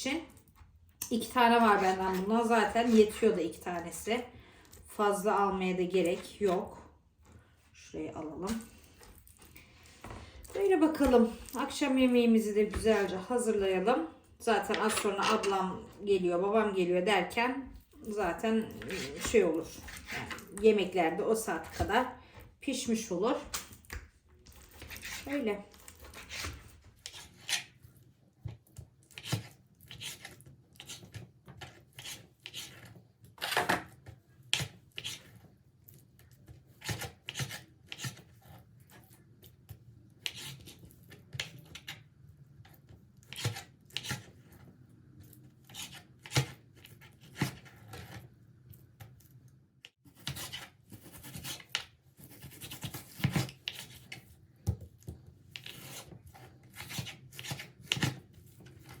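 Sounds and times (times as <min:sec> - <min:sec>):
knife slicing and scraping: 0:18.6 - 0:20.6, 0:24.5 - 0:27.8, 0:29.0 - 0:36.0, 0:36.8 - 0:39.2, 0:40.2 - 0:44.5, 0:45.2 - 0:48.3, 0:50.1 - 0:54.2, 0:55.5 - 0:59.0.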